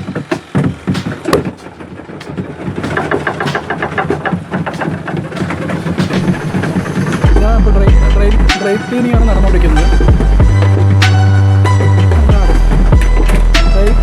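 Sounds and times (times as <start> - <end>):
washing machine drum spinning: 0.0 - 11.0
irregular knocks: 0.0 - 14.0
rapid regular rattle: 0.0 - 14.0.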